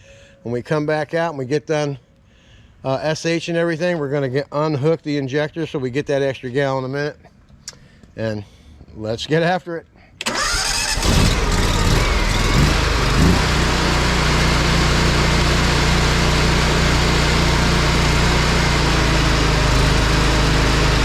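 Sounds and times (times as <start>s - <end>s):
pressure washer engine running: 10.9s - 21.0s.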